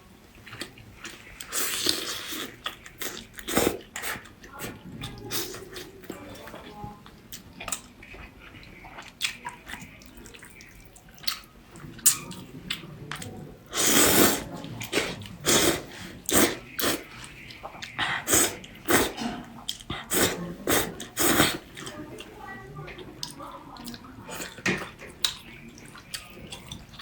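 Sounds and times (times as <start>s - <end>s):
wet eating mouth noises: 0.5s - 6.0s, 7.6s - 22.0s.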